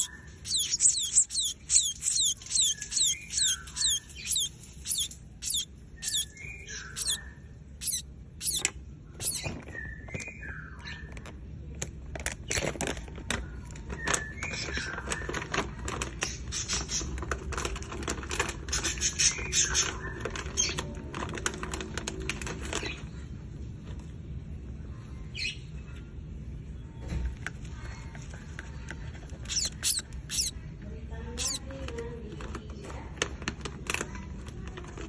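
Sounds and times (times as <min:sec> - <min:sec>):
low squeaky bird notes: 0:00.0 - 0:11.1, 0:29.4 - 0:30.6, 0:31.4 - 0:31.6
young bird chirping: 0:00.0 - 0:11.3, 0:29.4 - 0:30.6, 0:31.3 - 0:31.7.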